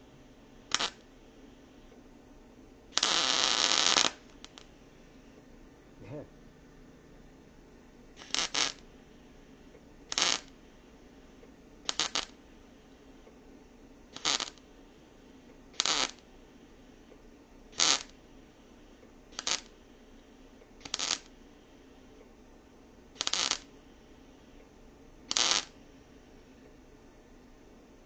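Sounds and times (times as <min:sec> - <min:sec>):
electric arc welder crackling: 0:00.7 - 0:01.1, 0:02.9 - 0:04.7, 0:08.2 - 0:08.9, 0:10.1 - 0:10.6, 0:11.8 - 0:12.4, 0:14.1 - 0:14.6, 0:15.7 - 0:16.3, 0:17.7 - 0:18.2, 0:19.3 - 0:19.8, 0:20.8 - 0:21.4, 0:23.1 - 0:23.8, 0:25.3 - 0:25.8.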